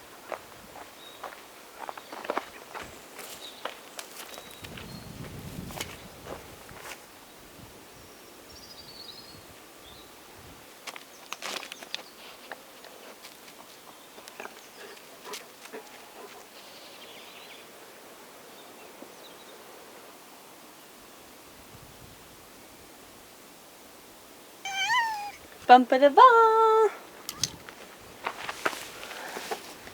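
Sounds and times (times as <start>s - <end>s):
outdoor background hiss: 0.0s - 29.9s
faint high chirps: 24.7s - 25.4s.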